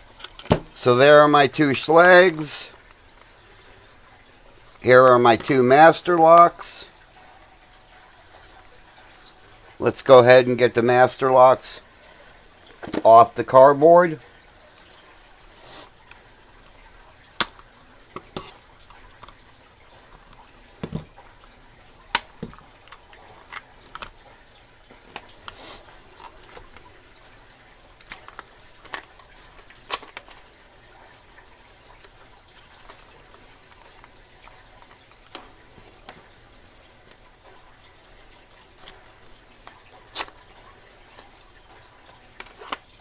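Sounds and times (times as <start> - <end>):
padlock clicks and knocks: 0.2 - 0.8.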